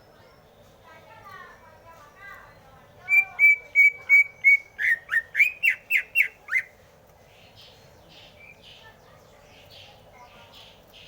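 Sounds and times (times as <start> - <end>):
bird singing clear whistles: 3.1 - 6.7.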